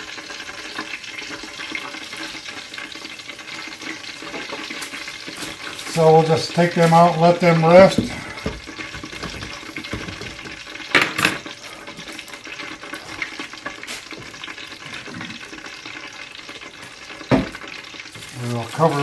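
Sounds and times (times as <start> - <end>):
food frying in hot oil: 0.0 - 19.0
utensils clattering: 6.6 - 11.5
knock: 17.3 - 17.6.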